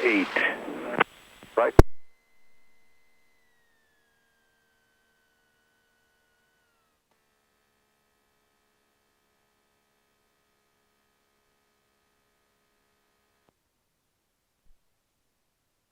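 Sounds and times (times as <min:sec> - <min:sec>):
faint electrical hum: 0:00.0 - 0:01.9.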